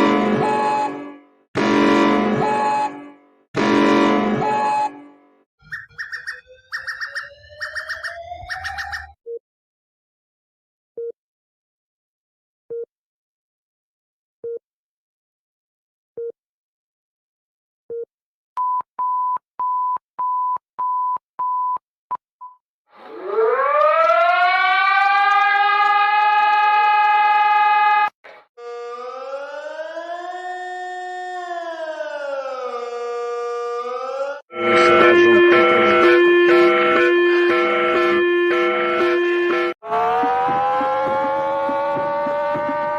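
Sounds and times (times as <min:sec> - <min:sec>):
civil defense siren: 0:00.0 - 0:05.0, 0:05.7 - 0:09.1, 0:23.0 - 0:42.9
siren tone falling in pitch: 0:00.0 - 0:09.2, 0:23.0 - 0:28.1, 0:34.5 - 0:42.9
electronic alarm beeps: 0:05.6 - 0:09.4, 0:34.5 - 0:41.4.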